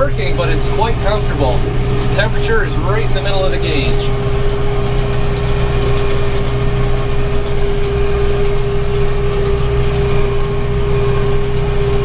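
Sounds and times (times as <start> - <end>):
steady hum: 0.0 - 12.0
tractor engine running under load: 0.0 - 12.0.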